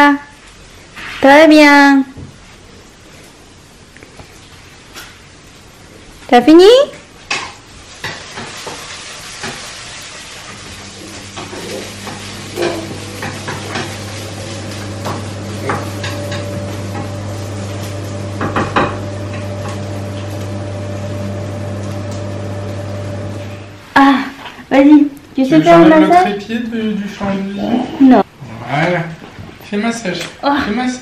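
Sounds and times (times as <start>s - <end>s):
steady electrical hum: 0.0s - 31.0s
household objects clattering: 10.5s - 20.5s.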